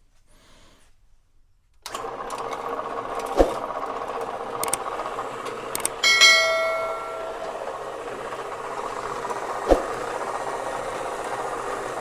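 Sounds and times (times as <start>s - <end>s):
bandsaw cutting steel: 1.9s - 12.0s
sharp metallic strike: 6.0s - 7.4s.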